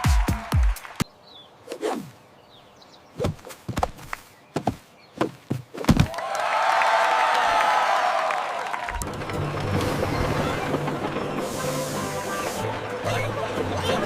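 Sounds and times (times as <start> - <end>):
quick downward swoop: 1.6 - 2.1
thuds and knocks: 3.2 - 6.1.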